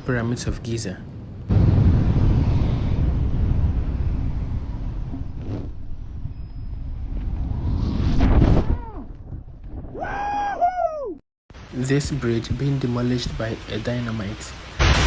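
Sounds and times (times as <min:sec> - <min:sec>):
rushing wind noise: 0:00.0 - 0:10.0.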